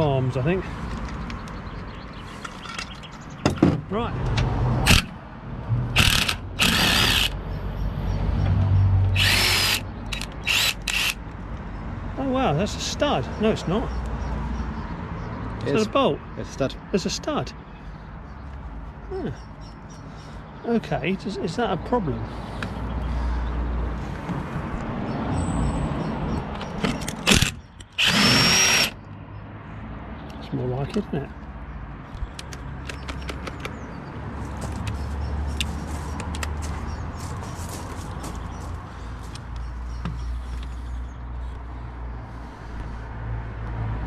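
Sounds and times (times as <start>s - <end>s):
power driver motor whining: 6.0s - 7.4s, 9.2s - 11.2s, 27.3s - 28.9s.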